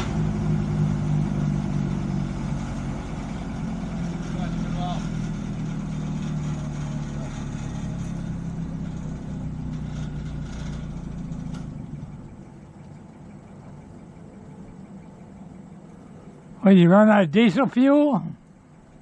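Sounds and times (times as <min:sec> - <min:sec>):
diesel truck engine idling: 0:00.0 - 0:19.0
faint low hum: 0:00.6 - 0:19.0.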